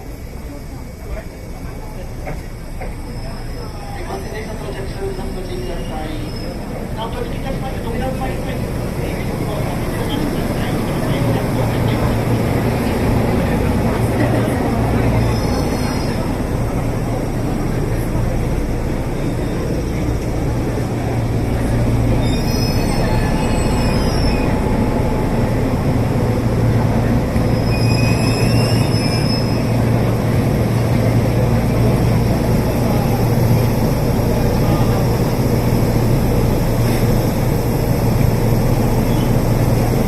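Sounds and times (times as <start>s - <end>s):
electric train rumbling: 0.0s - 40.0s
train wheels squealing: 2.4s - 6.8s, 15.0s - 16.6s, 22.1s - 24.8s, 27.4s - 30.0s, 38.9s - 39.6s.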